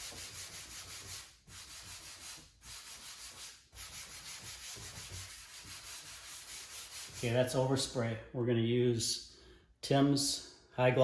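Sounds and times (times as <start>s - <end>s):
scratchy rubbing on car paint: 0.0s - 7.6s.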